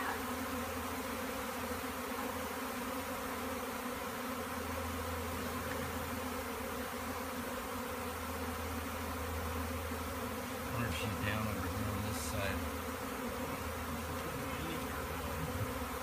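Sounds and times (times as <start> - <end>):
honey bees buzzing: 0.0 - 16.0.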